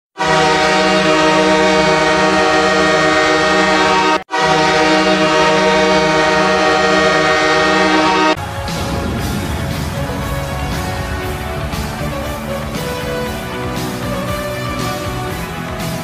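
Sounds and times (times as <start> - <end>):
goal horn blasts: 0.2 - 16.0
music: 8.1 - 16.0.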